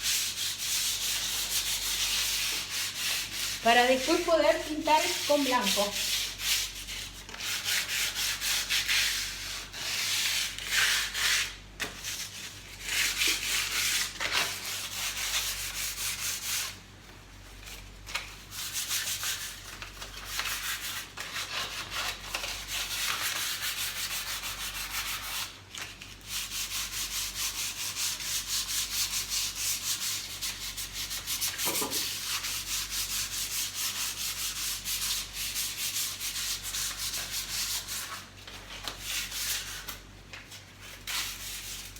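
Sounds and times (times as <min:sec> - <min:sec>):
sandpaper sanding by hand: 0:00.0 - 0:11.5, 0:20.3 - 0:25.5, 0:26.3 - 0:38.2.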